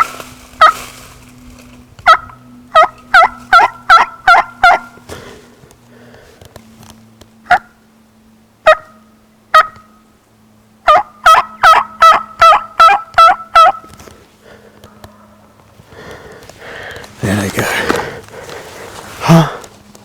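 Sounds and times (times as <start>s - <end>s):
turkey call yelping: 0.6s - 0.8s, 2.0s - 5.1s, 7.4s - 7.8s, 8.6s - 10.0s, 10.8s - 14.0s.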